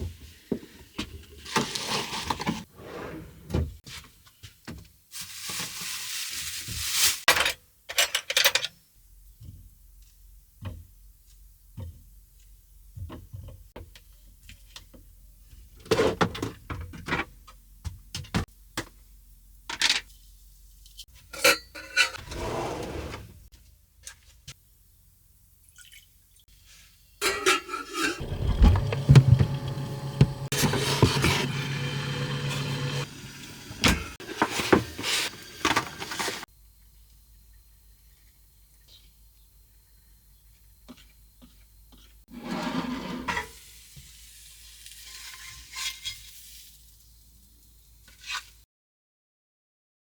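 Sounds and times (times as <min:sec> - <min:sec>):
water running into a pot: 0:25.6 - 0:26.2, 0:28.2 - 0:36.4.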